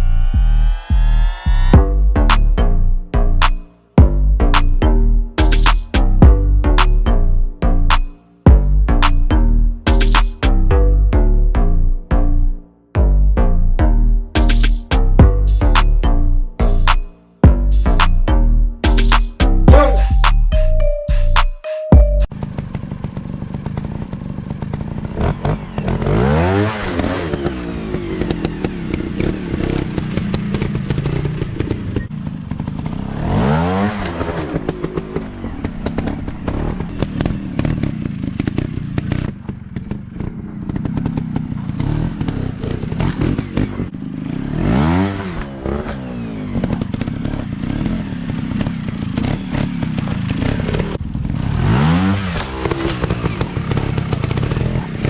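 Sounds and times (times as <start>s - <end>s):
dirt bike engine revving: 22.4s - 55.0s.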